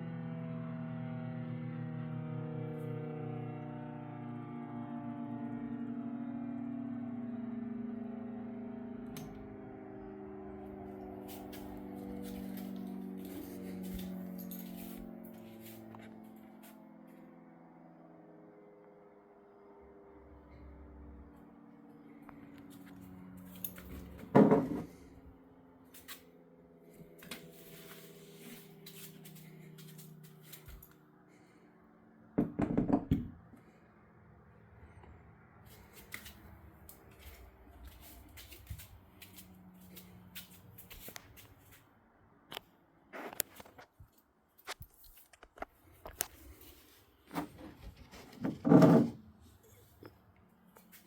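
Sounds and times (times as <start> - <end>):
mechanical siren hum coasting down: 0.0 - 32.4, 33.4 - 41.8.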